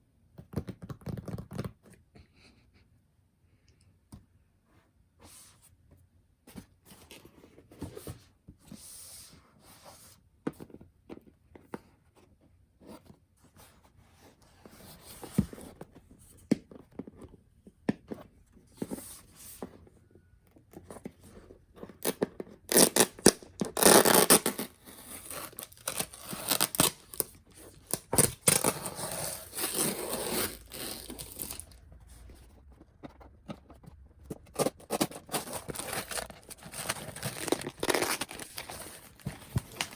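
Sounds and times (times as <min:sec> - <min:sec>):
paper tearing and crinkling: 0:23.8 - 0:31.8, 0:34.4 - 0:39.9.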